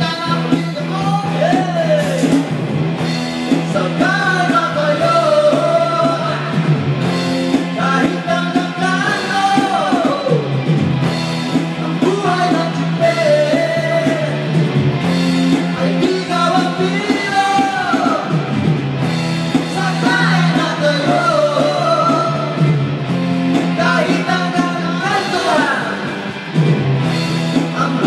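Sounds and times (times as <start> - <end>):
rock music with singing: 0.0 - 28.0.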